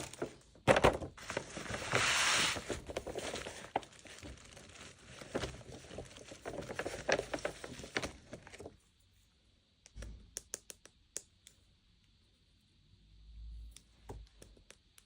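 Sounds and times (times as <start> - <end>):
packaging crinkling and rustling: 0.0 - 8.8.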